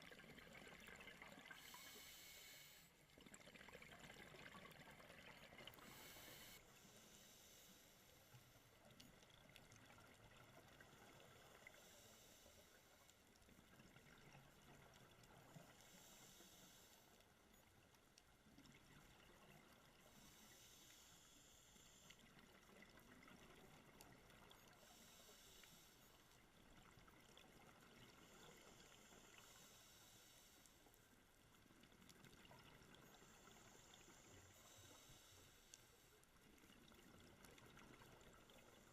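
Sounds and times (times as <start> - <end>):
diver regulator breathing: 1.5 - 3.0, 5.7 - 8.8, 11.7 - 13.2, 15.7 - 17.3, 20.1 - 22.3, 24.8 - 26.3, 28.2 - 31.1, 33.1 - 36.2.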